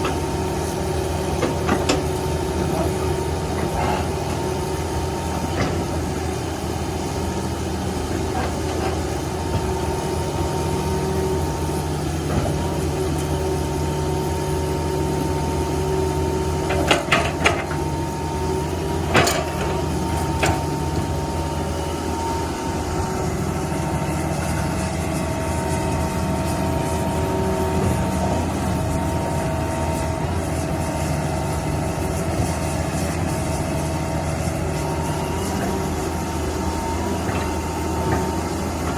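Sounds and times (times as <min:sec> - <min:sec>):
diesel engine running: 0:00.0 - 0:38.9
steady whine: 0:16.0 - 0:38.9.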